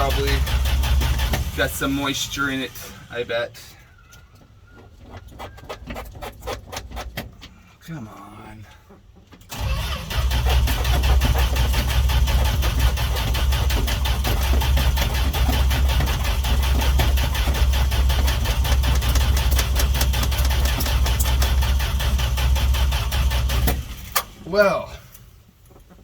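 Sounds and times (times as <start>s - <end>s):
starter cranking engine: 0.0s - 3.4s, 9.4s - 25.3s.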